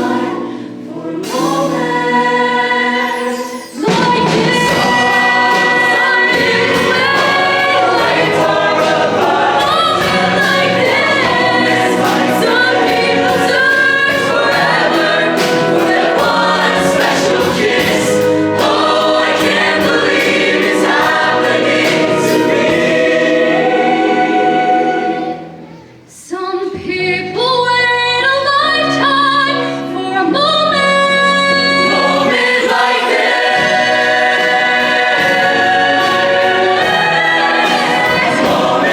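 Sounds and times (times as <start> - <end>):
choir singing pop song: 0.0 - 25.8, 28.8 - 38.9
band with steady beat: 3.9 - 23.3.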